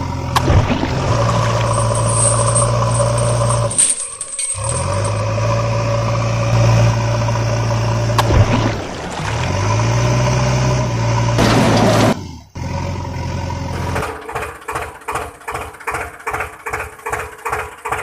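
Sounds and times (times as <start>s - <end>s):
heavy vehicle engine idling: 13.7s - 18.0s.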